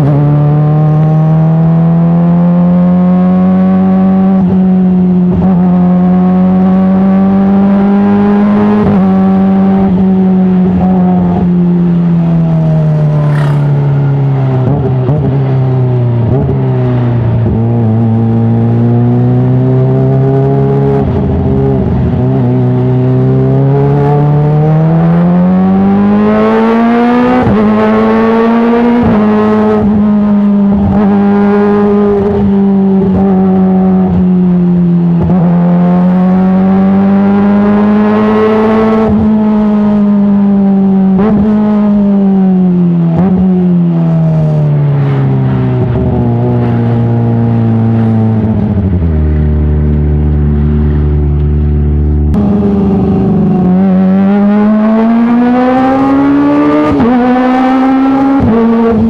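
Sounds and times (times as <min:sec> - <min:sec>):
motorcycle engine running: 0:09.4 - 0:18.5, 0:44.4 - 0:54.9.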